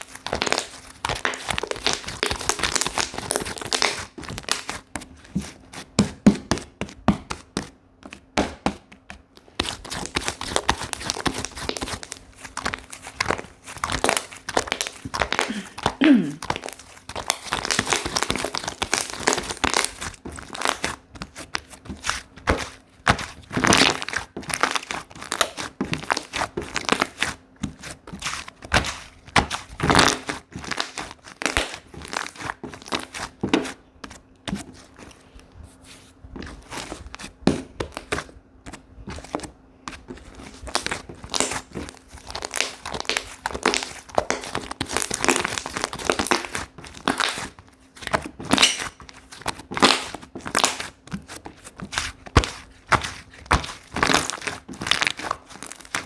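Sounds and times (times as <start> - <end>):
slime squishing with sticky crackles: 0.0 - 56.0.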